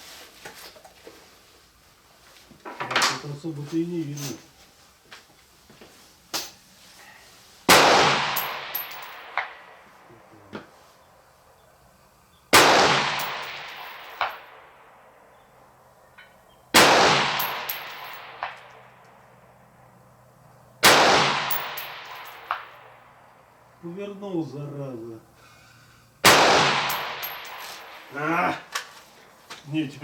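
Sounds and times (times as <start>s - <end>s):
rifle shots echoing: 7.7s - 9.8s, 12.6s - 14.8s, 16.8s - 18.7s, 20.8s - 22.8s, 26.2s - 28.1s
bullet clanging on steel target: 8.3s - 9.6s, 17.3s - 18.7s, 21.4s - 22.8s, 26.7s - 28.1s.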